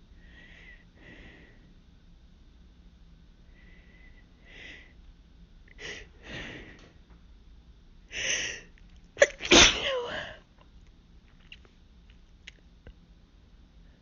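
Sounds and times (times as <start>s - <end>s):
woman sneezing loudly: 9.2s - 10.4s.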